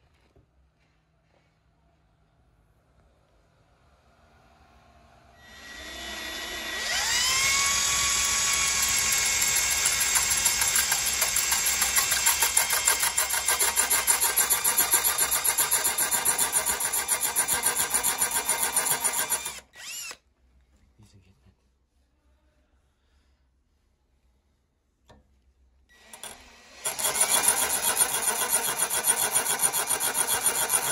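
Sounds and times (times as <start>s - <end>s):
electric impact drill running: 5.4s - 20.2s, 25.9s - 30.9s.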